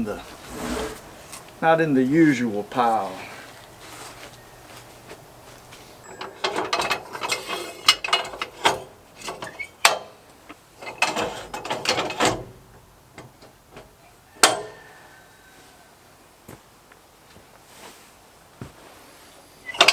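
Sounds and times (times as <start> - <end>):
wood scraping and clattering: 0.0 - 15.0.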